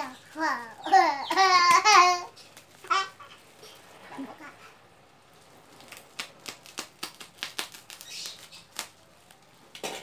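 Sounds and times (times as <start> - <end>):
packaging crackling open: 5.6 - 9.8.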